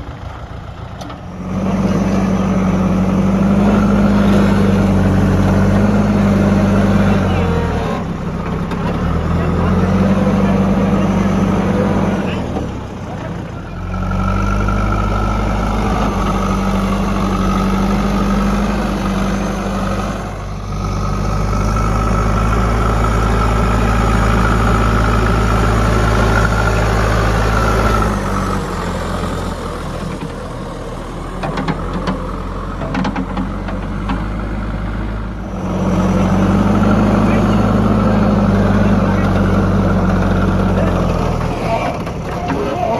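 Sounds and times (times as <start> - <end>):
diesel engine running: 0.0 - 42.9
knocks and clatters: 31.4 - 34.3.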